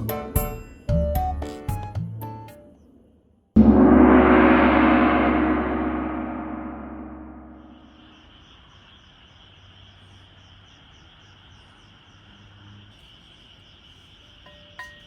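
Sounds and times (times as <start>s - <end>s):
insects chirping: 7.0s - 15.0s.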